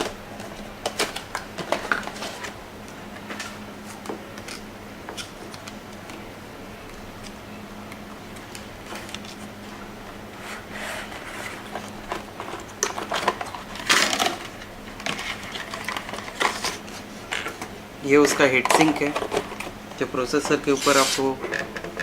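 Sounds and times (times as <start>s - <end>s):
packaging rustles: 0.0s - 5.8s, 10.4s - 21.7s
faint steady hum: 0.0s - 22.0s.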